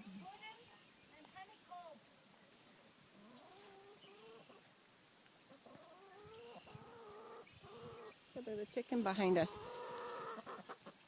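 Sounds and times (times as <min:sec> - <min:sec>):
chicken calling: 0:05.5 - 0:08.2, 0:09.4 - 0:11.0.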